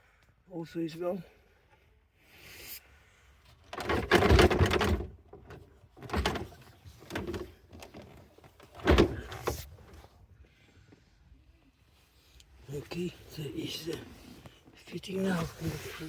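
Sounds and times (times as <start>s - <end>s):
hard plastic scraping and knocking: 3.7s - 9.7s.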